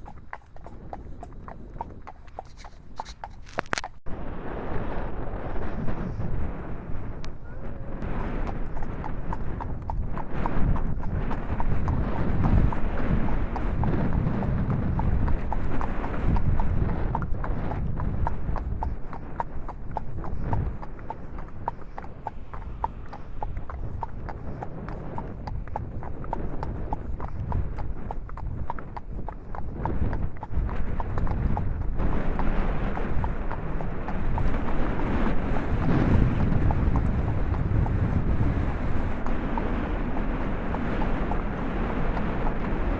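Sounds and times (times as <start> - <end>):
gusty wind on microphone: 0.0 - 42.9
sharp clicks: 0.1 - 4.0.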